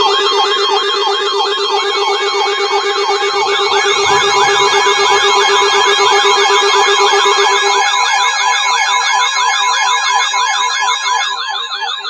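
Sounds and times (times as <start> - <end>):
electronic siren yelping: 0.0 - 12.0
steady alert tone: 3.6 - 6.6.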